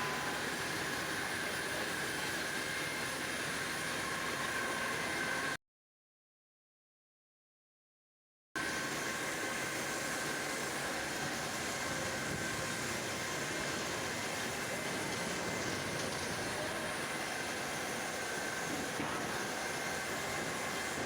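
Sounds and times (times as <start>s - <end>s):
high whine: 0.0s - 1.8s
sawmill machinery running: 0.0s - 5.6s, 8.6s - 21.0s.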